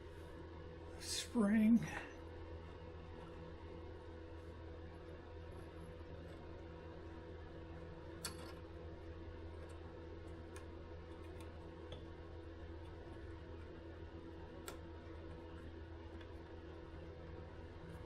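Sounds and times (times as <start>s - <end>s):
faint electrical hum: 0.0s - 18.0s.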